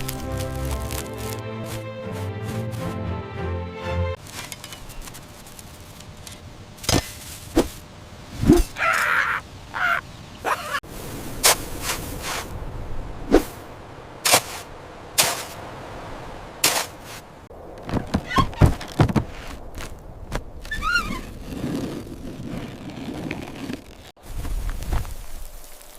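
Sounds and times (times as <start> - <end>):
irregular knocks and thunks: 17.8 - 20.5.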